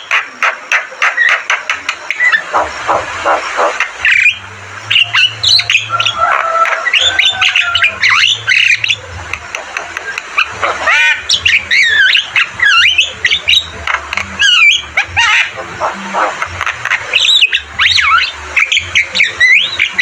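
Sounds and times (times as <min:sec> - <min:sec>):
myna singing whistles and squawks: 0:00.0 - 0:20.0.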